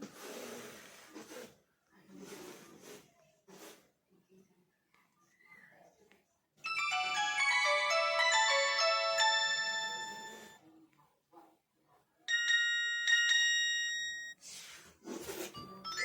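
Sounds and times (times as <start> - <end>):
bell-like chime: 6.7 - 10.6
phone ringtone melody: 6.7 - 10.6, 12.3 - 14.4, 15.8 - 16.0.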